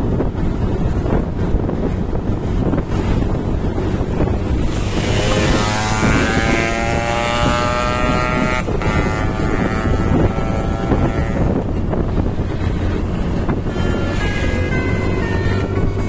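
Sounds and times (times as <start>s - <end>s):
road traffic rumble: 0.0s - 16.0s
wind on microphone: 0.0s - 16.0s
multi-tone bus air horn: 13.5s - 16.0s.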